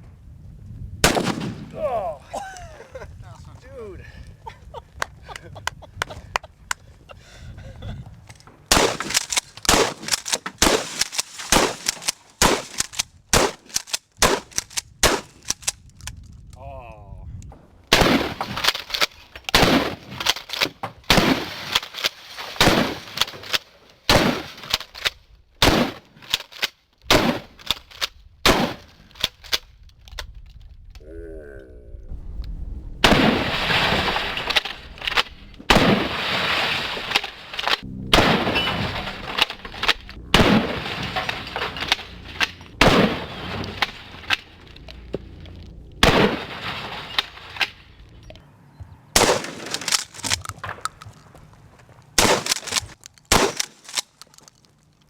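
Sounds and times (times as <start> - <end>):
gunshots: 1.0 - 1.8, 8.7 - 15.7, 17.9 - 18.9, 19.5 - 20.4, 21.1 - 21.9, 22.5 - 24.8, 25.6 - 26.1, 27.1 - 27.7, 28.4 - 29.0, 33.0 - 45.3, 46.0 - 47.9, 49.2 - 50.8, 52.2 - 54.0.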